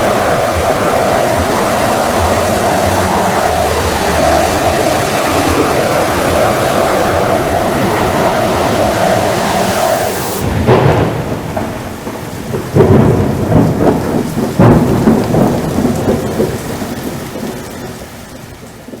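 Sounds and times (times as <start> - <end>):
loud thunder claps: 0.0 - 19.0
rolling thunder: 0.0 - 19.0
steady rain: 0.0 - 19.0.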